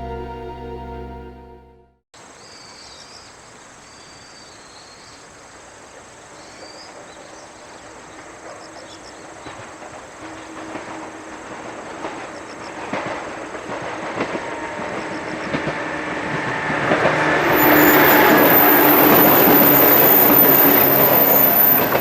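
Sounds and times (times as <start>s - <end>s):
background music: 0.0s - 2.0s
train approaching rumble: 6.6s - 22.0s
high insect drone: 17.5s - 22.0s.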